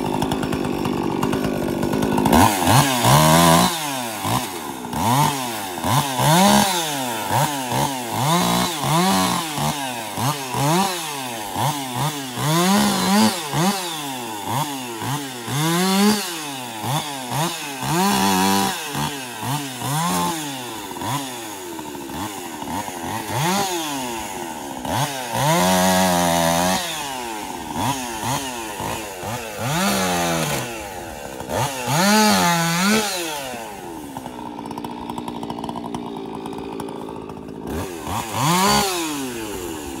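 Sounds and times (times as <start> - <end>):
chainsaw revving up and down: 0.0 - 40.0.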